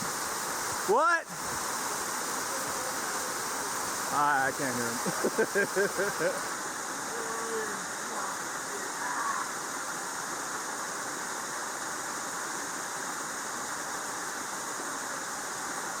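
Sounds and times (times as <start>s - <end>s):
waterfall pouring: 0.0s - 11.6s.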